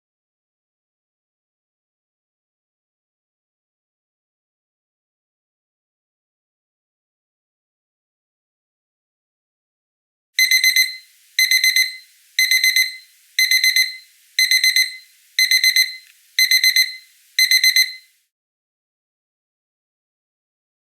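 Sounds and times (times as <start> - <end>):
kitchen timer high-pitched beeps: 10.4 - 18.1.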